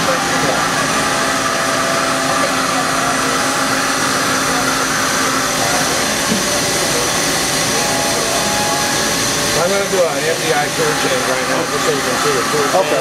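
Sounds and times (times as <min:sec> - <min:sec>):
machining center whirring: 0:00.0 - 0:13.0.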